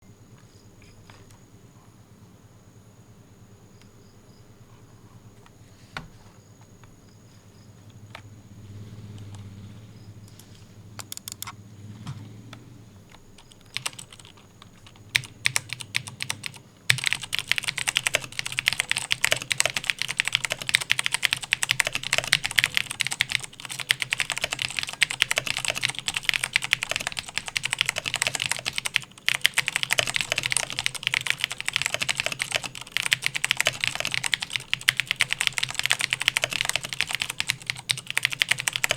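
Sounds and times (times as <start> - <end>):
typing on clicky mechanical keyboard: 10.3 - 11.6, 13.1 - 38.9.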